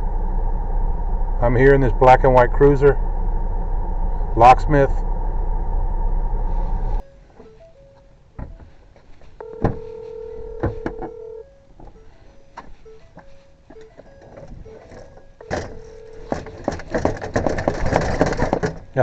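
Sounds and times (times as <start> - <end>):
phone ringback tone: 6.6 - 8.7, 9.4 - 16.6
short beeps: 9.4 - 16.6.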